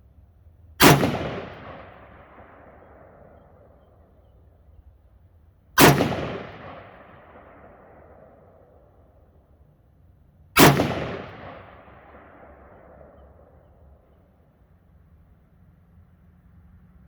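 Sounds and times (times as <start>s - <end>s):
rifle shot with echo: 0.8s - 4.3s, 5.8s - 9.4s, 10.6s - 14.2s.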